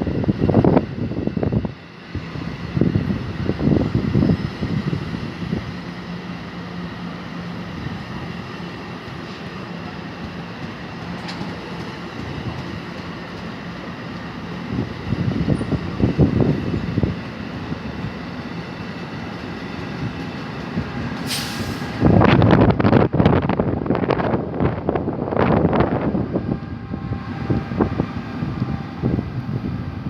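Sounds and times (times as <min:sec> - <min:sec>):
wind buffeting microphone: 0:00.0 - 0:06.3, 0:07.6 - 0:21.2, 0:21.8 - 0:30.0
train rolling past: 0:00.0 - 0:30.0.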